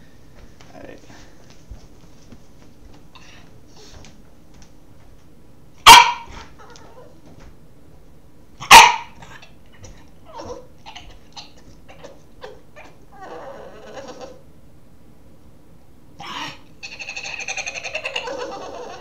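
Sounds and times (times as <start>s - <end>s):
puppy barking: 5.8s - 7.2s, 8.6s - 13.0s.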